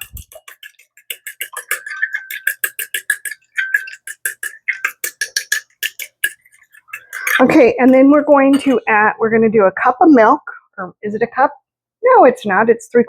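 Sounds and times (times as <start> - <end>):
utensil tapping bowl beating egg: 0.0 - 9.0.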